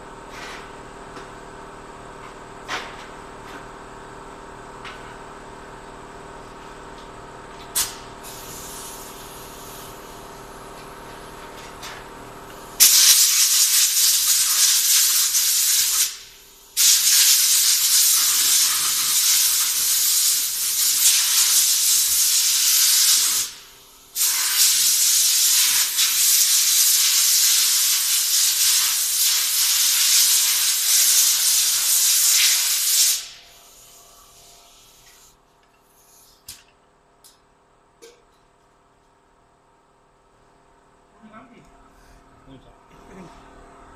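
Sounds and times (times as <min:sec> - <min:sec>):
compressed air blow gun hissing: 0:08.2 - 0:10.1, 0:12.8 - 0:16.2, 0:16.8 - 0:34.8.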